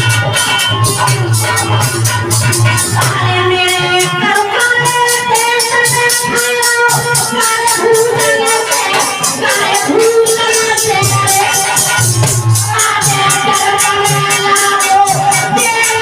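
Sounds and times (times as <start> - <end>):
jingling percussion beat: 0.0 - 16.0.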